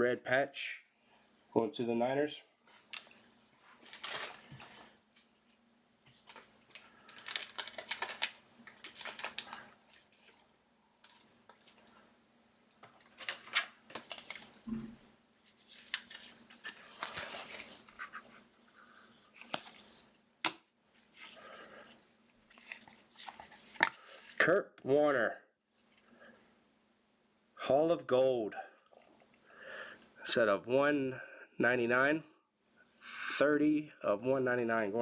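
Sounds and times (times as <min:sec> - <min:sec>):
cards and plastic sleeves rustling: 0:02.6 - 0:14.8, 0:15.4 - 0:24.6.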